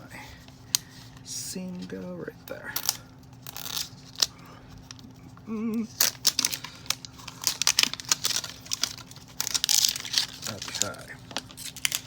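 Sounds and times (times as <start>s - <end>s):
plastic packaging crinkling and snapping: 2.7s - 5.1s, 5.8s - 12.0s.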